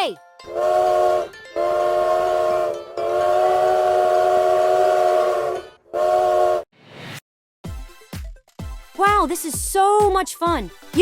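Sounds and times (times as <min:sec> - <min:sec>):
steam locomotive whistle: 0:00.5 - 0:06.7.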